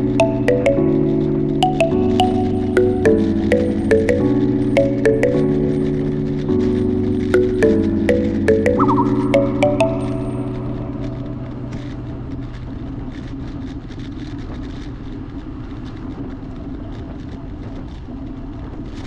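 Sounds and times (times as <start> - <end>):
music: 0.0 - 12.6.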